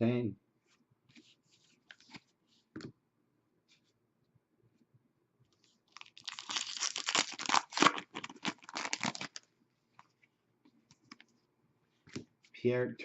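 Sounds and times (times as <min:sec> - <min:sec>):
wrapper tearing and crinkling: 0:05.9 - 0:09.4.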